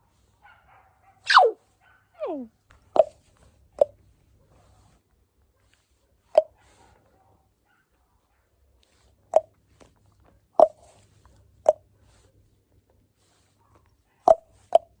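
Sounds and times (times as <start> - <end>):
hollow plopping clucks: 2.7 - 4.1, 6.3 - 6.6, 9.2 - 9.6, 10.6 - 11.9, 14.2 - 15.0.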